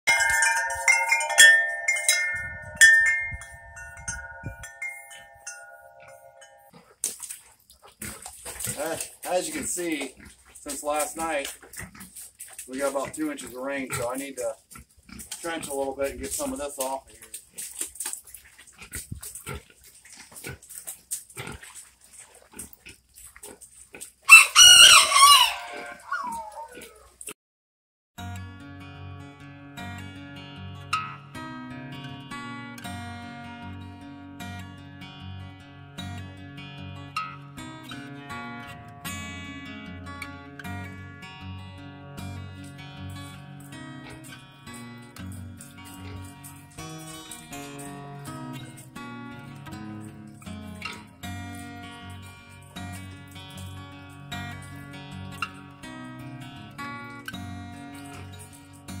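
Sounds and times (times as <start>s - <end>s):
metal wind chimes ringing: 0.1s - 6.7s
rooster crowing: 24.3s - 27.0s.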